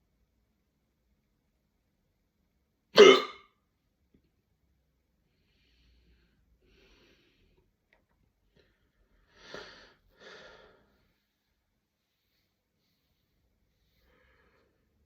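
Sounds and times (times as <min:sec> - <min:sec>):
person breathing: 0:05.3 - 0:07.8, 0:08.5 - 0:11.6, 0:12.2 - 0:15.0.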